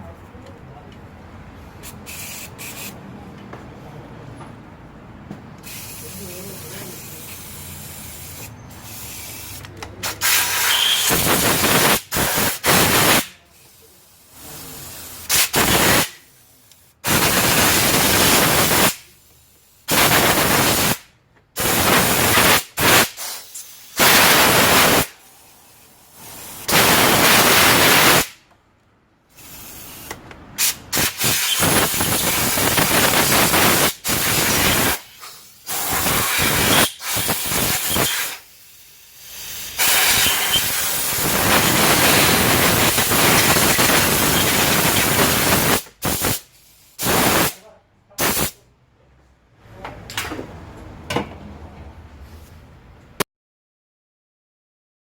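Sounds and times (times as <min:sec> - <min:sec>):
bursts of hissing spray: 0:01.8 - 0:03.0, 0:05.6 - 0:28.4, 0:29.3 - 0:47.6, 0:48.2 - 0:48.6.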